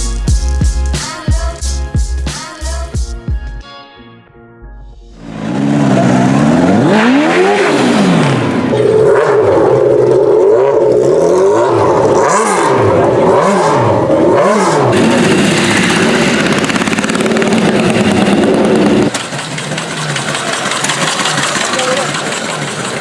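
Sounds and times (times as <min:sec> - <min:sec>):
motorcycle engine revving: 0:05.2 - 0:23.0.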